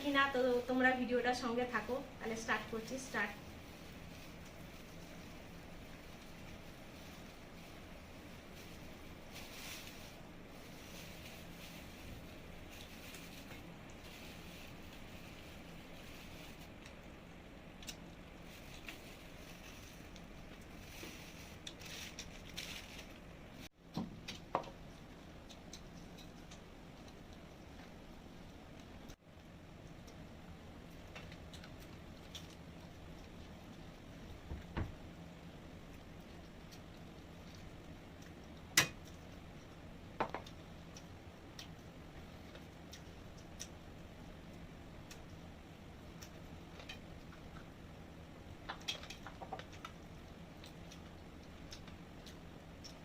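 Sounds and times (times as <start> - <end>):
faint steady hum: 0.0 - 53.0
soft chewing: 24.2 - 34.4, 35.1 - 53.0.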